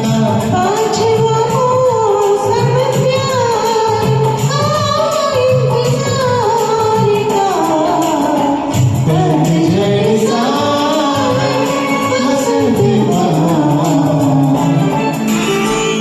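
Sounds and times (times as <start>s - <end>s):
karaoke backing track: 0.0s - 16.0s
person singing: 7.1s - 16.0s.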